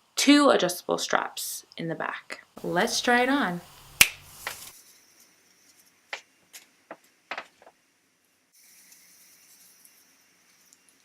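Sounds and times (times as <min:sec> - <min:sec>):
faint steady hiss: 0:00.0 - 0:11.0
wig handling taps and rustles: 0:06.1 - 0:07.8.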